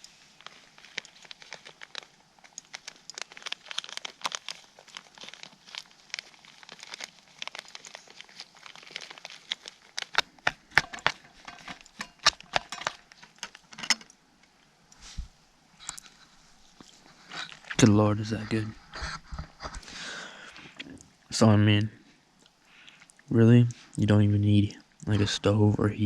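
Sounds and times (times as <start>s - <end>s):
food packaging crinkling: 0.0s - 15.2s, 15.8s - 21.2s.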